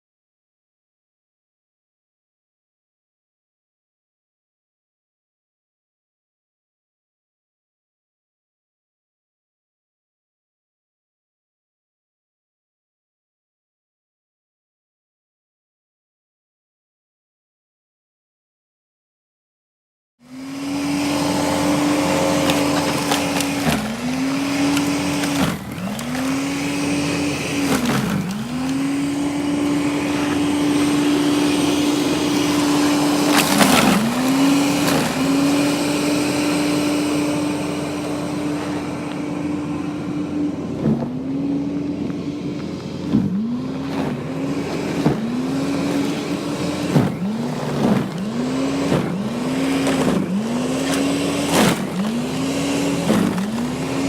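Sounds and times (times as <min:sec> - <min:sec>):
small high-revving motor: 0:20.2 - 0:54.0
knocks and scraping: 0:20.6 - 0:39.6, 0:40.6 - 0:54.0.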